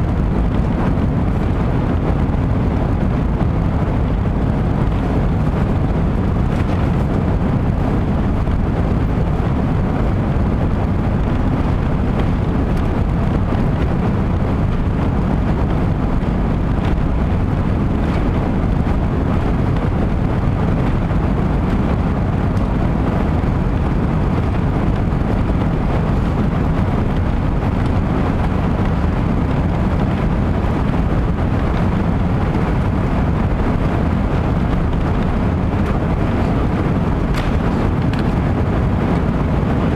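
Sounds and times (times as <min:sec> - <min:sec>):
airliner engines and airflow rumble: 0:00.0 - 0:39.9.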